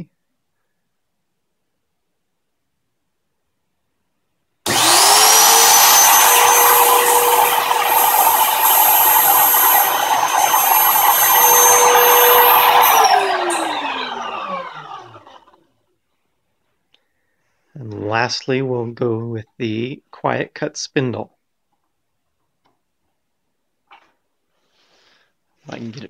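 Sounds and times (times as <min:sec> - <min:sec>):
power tool high whine: 0:04.7 - 0:15.5.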